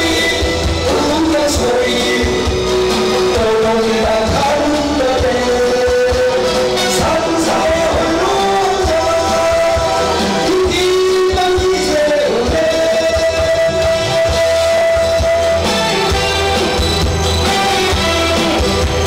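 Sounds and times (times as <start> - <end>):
man singing with sliding notes: 0.0 - 16.3
band accompaniment with drums: 0.0 - 19.0.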